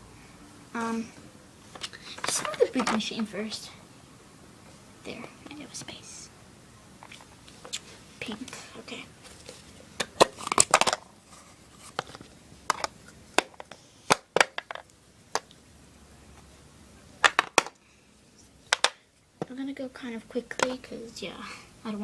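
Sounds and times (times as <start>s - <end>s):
plastic toys clicking and knocking: 1.8s - 3.0s, 10.0s - 11.1s, 12.0s - 15.5s, 17.2s - 17.8s, 18.7s - 19.0s, 20.5s - 20.8s.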